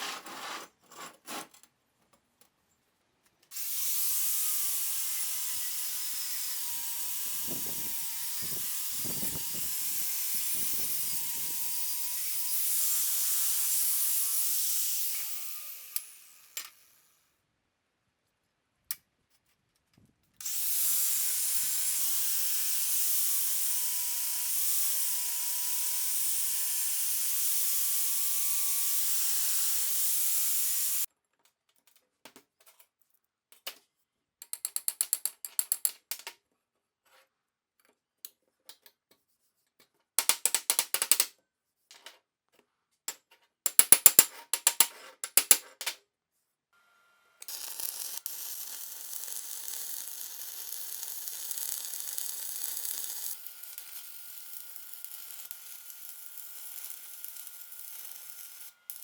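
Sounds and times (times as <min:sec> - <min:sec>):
power tool grinding steel: 0:03.5 - 0:17.1, 0:20.4 - 0:31.1, 0:47.4 - 0:59.0.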